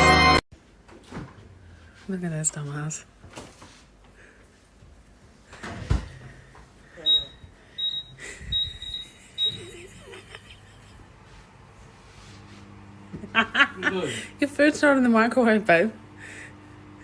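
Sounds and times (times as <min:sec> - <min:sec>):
short high electronic beeps: 0:07.0 - 0:09.8.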